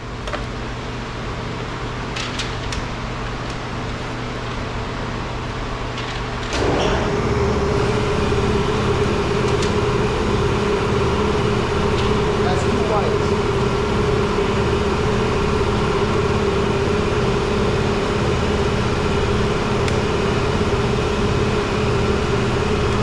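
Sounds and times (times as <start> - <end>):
low background hum: 0.0 - 23.0
machine running with steady hum: 0.0 - 23.0.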